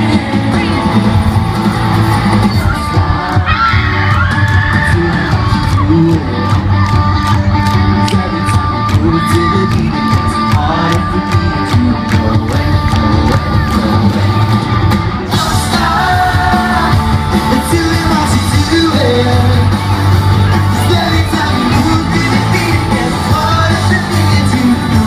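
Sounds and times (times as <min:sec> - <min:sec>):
lead singing: 0:00.0 - 0:25.0
live rock band playing: 0:00.0 - 0:25.0.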